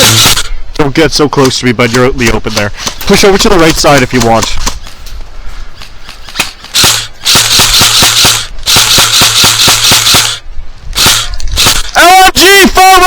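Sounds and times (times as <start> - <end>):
airsoft gun firing full auto: 6.7 - 10.4.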